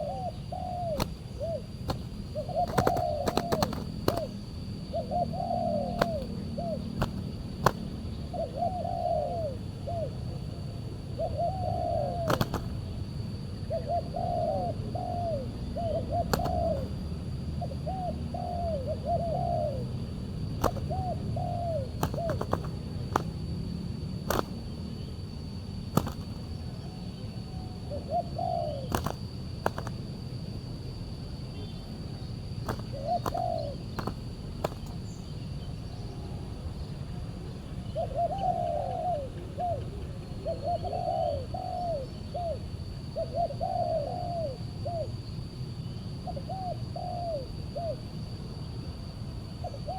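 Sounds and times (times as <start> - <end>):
doves cooing: 0.0 - 30.5, 32.4 - 35.4, 38.0 - 42.6, 43.2 - 45.1
sharp clicks: 1.9 - 4.3, 7.0 - 7.9, 22.0 - 23.4, 24.3 - 24.6, 26.0 - 26.5, 28.9 - 30.0.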